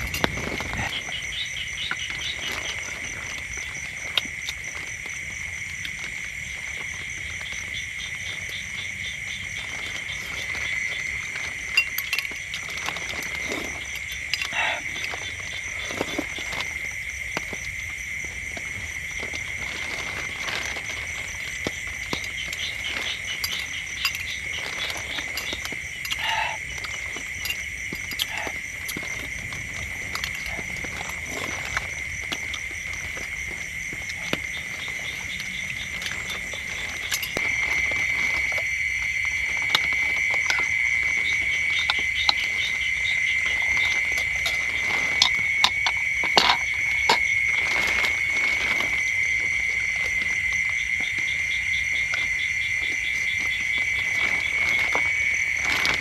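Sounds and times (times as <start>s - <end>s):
high-pitched chorus of calling animals: 12.6s - 16.8s, 21.9s - 33.3s.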